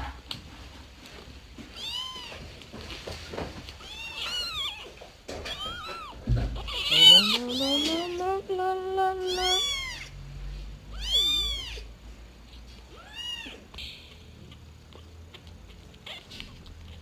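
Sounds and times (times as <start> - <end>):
cat meowing: 1.8 - 2.4, 3.8 - 8.2, 9.2 - 10.2, 10.9 - 11.9, 12.9 - 14.2, 14.9 - 17.0.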